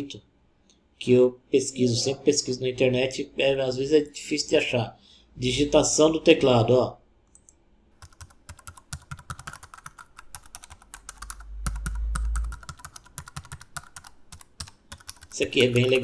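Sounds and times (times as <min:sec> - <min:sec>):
computer keyboard typing: 0:08.0 - 0:16.0.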